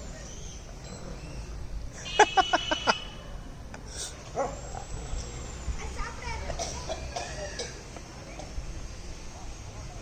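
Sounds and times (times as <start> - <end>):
dog barking: 4.3 - 4.7.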